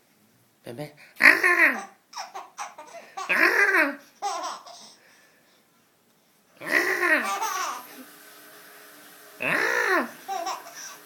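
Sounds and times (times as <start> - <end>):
baby laughing: 1.2 - 5.0, 6.6 - 8.0, 9.4 - 11.0.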